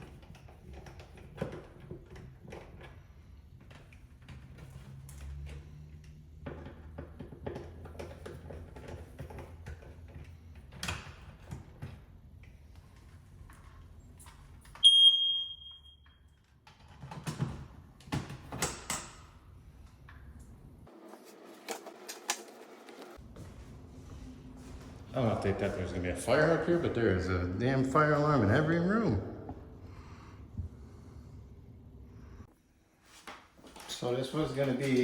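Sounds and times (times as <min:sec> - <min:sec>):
high-pitched smoke alarm beep: 0:14.8 - 0:16.3.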